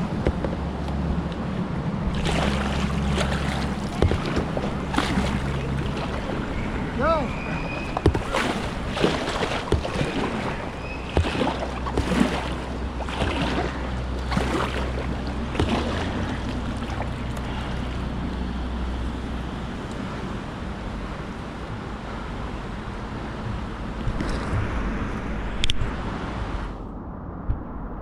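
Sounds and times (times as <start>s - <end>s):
paddle strokes splashing: 0.0s - 20.2s
rushing river water: 0.0s - 26.8s.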